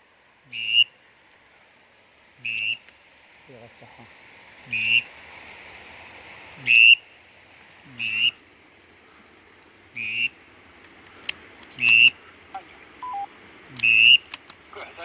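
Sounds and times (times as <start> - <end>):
whistled waterfowl calls: 0.5 - 1.0, 2.4 - 2.9, 4.7 - 5.1, 6.6 - 7.1, 7.9 - 8.4, 9.9 - 10.4, 11.8 - 14.2
faint sharp clicks: 10.8 - 12.7, 13.7 - 14.6.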